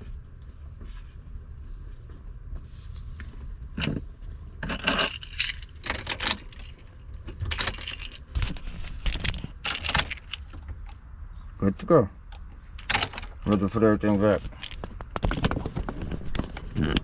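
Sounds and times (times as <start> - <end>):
small metal items clinking: 4.6 - 10.7, 12.8 - 15.4.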